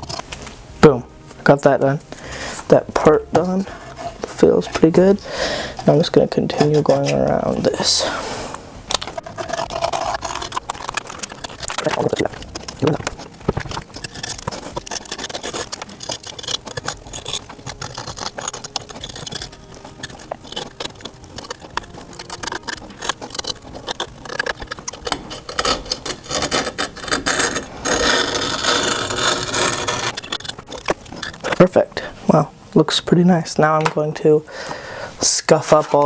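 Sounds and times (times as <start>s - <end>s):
blade scraping grip tape: 3.4s - 31.8s.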